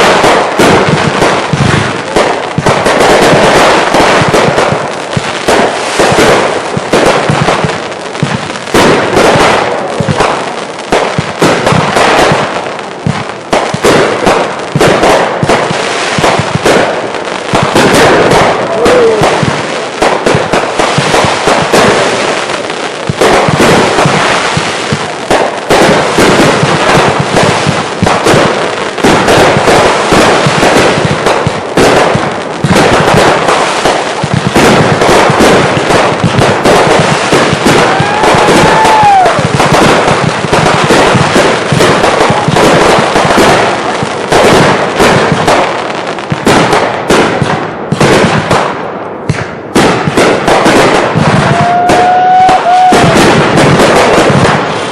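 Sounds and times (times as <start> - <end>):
fireworks barrage crackling: 0.0 - 54.9
firework whistle: 37.3 - 40.0, 51.3 - 54.0.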